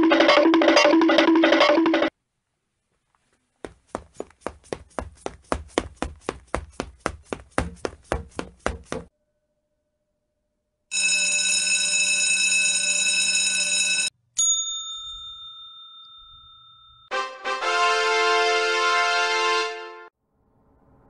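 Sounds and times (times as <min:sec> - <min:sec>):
desk bell ringing: 0:10.9 - 0:17.1.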